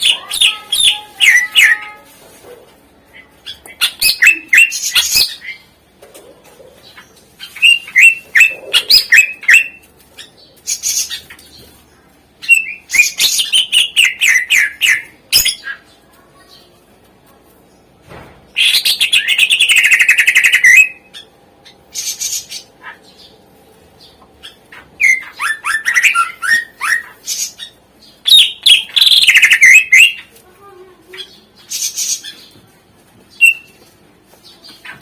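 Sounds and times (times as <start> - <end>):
bird singing with fast trills: 0.0 - 2.0, 7.4 - 11.7, 12.4 - 15.9, 18.6 - 23.4, 24.0 - 30.3, 33.3 - 33.8.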